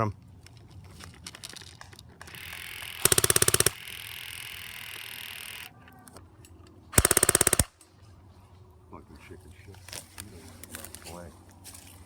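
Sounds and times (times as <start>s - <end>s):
airsoft gun full-auto burst: 2.3s - 5.6s, 7.0s - 7.7s.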